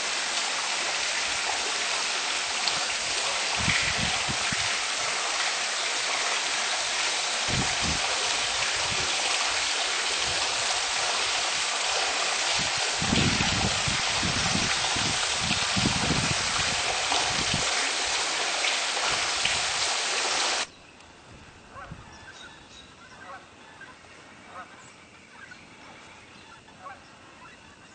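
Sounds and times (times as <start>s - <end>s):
waterfall rushing: 0.0s - 20.7s.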